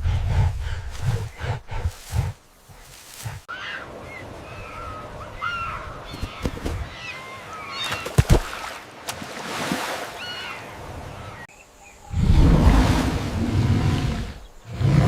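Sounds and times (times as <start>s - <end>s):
birds calling: 0.0s - 8.2s.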